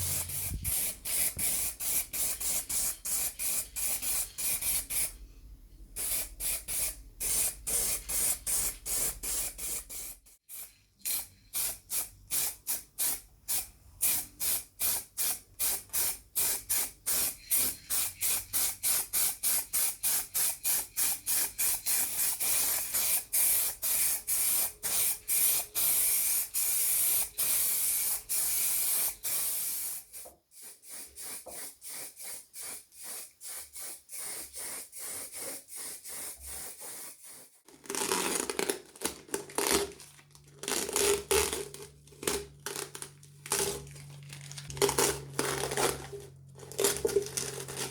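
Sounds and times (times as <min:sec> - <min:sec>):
short spraying hiss bursts: 0:00.0 - 0:05.2, 0:06.0 - 0:37.5.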